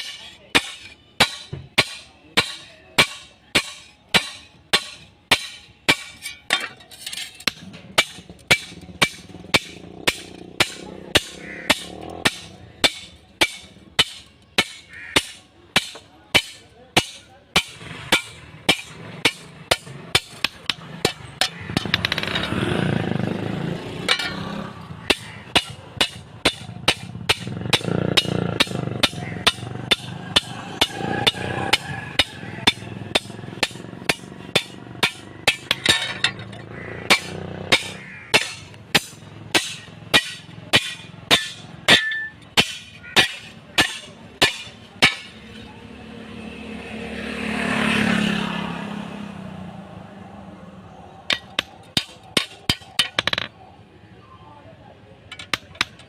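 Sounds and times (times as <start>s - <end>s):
hammer striking metal on anvil: 0.0s - 22.4s, 24.1s - 45.5s, 51.3s - 53.5s, 55.3s - 56.0s.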